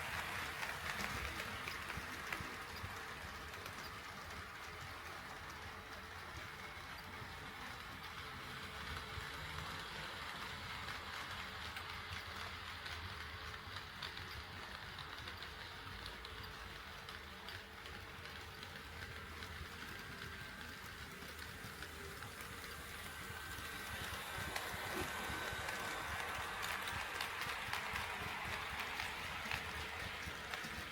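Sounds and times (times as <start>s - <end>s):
model train rolling rumble: 0.0s - 30.9s
wheels clicking over rail joints: 0.0s - 30.9s.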